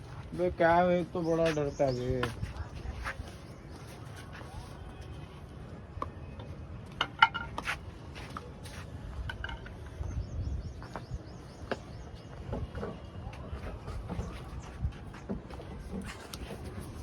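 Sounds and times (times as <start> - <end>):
small birds chirping: 0.3 - 4.0, 9.8 - 13.2.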